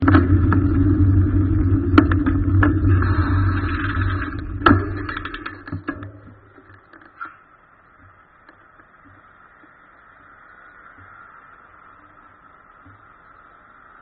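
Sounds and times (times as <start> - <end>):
car cabin engine drone: 0.0 - 7.0.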